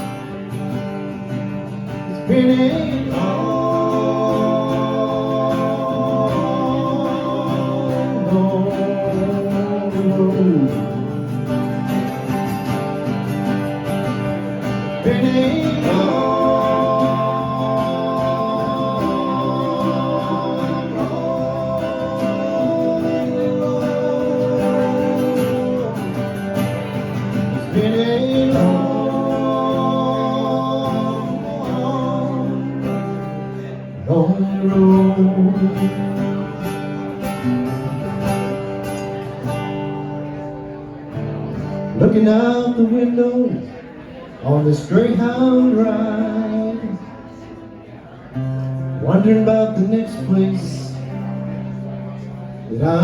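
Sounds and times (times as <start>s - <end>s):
country ballad on acoustic guitar: 0.0s - 53.0s
singers holding long note: 2.3s - 10.8s, 15.0s - 26.9s.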